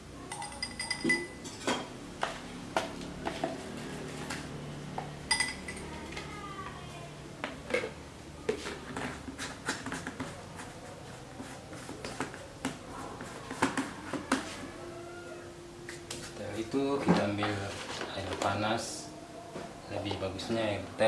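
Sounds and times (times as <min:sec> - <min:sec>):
teaspoon clinking against glass: 0:00.3 - 0:01.8, 0:05.3 - 0:05.9.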